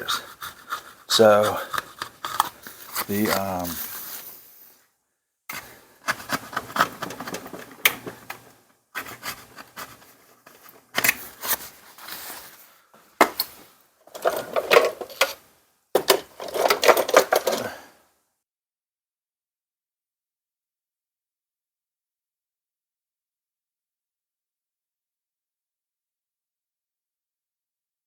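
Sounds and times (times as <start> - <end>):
metal parts and tools clinking: 13.3 - 15.4, 16.0 - 17.8.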